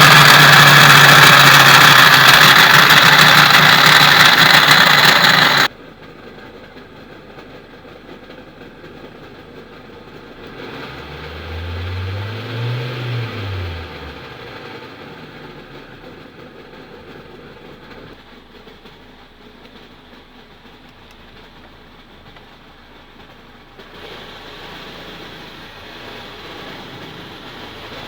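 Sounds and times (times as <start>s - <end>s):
harsh compressor noise: 0.0s - 5.7s
car engine running: 0.0s - 6.0s.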